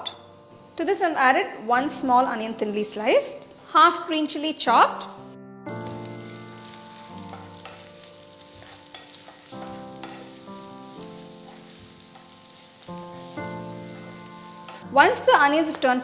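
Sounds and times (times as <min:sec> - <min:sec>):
soft background music: 0:00.0 - 0:16.0
vegetables sizzling in hot oil: 0:02.2 - 0:15.9
spoon scraping pan: 0:05.8 - 0:14.9.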